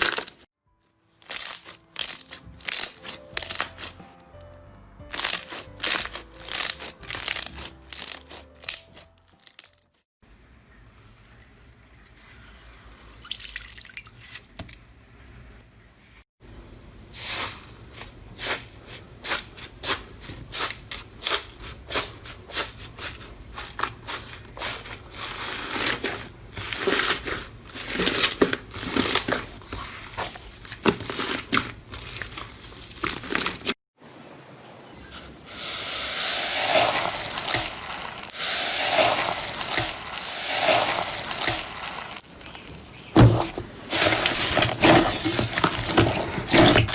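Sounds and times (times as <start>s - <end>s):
slime squishing and popping: 1.2s - 3.9s, 5.1s - 9.7s.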